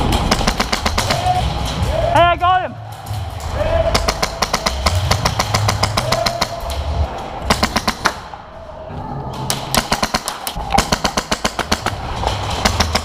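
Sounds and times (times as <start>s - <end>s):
airsoft guns firing full auto: 0.0s - 1.2s.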